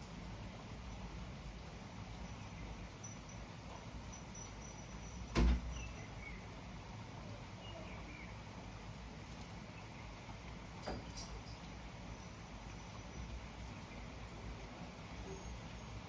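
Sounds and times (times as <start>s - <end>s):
sharp thump: 5.4s - 5.7s.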